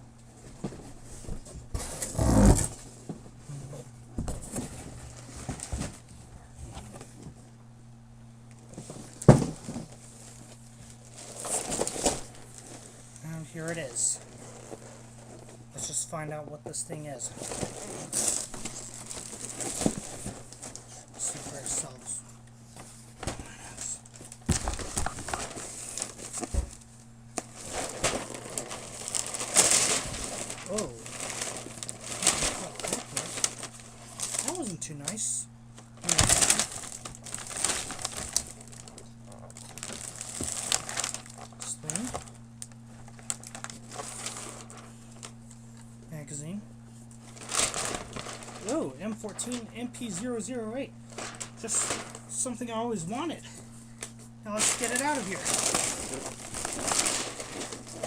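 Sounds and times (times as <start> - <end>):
packing peanuts rustling: 8.8 - 15.5, 17.3 - 22.2, 23.3 - 35.4, 36.0 - 45.4, 47.2 - 50.4, 51.1 - 53.0, 54.5 - 58.0.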